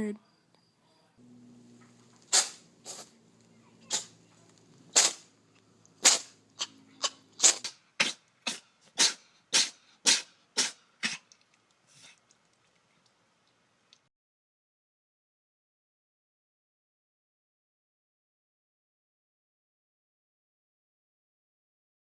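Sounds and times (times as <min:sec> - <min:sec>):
cat sneezing: 0:02.3 - 0:03.2, 0:03.9 - 0:04.2, 0:04.9 - 0:05.3, 0:06.0 - 0:11.2.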